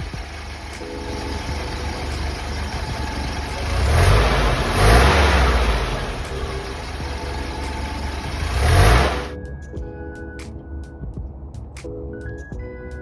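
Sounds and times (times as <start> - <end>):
engine idling: 0.0 - 9.3
engine revving: 0.0 - 9.3.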